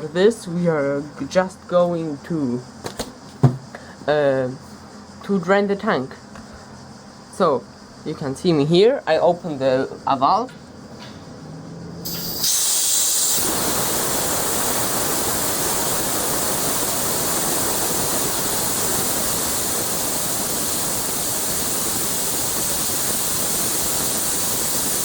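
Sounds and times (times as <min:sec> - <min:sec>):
compressed air hissing from valve: 0:12.0 - 0:25.0.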